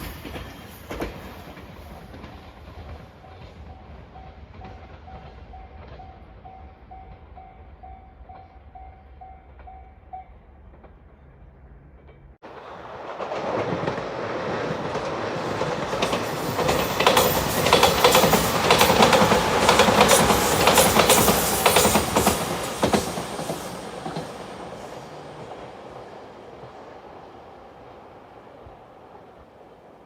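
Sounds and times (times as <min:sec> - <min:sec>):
train wheels clickety-clack: 0:00.0 - 0:08.9, 0:12.0 - 0:27.1.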